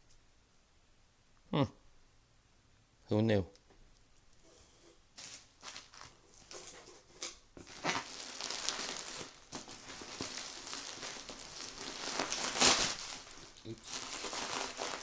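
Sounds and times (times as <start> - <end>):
packaging crinkling and rustling: 5.2 - 15.0.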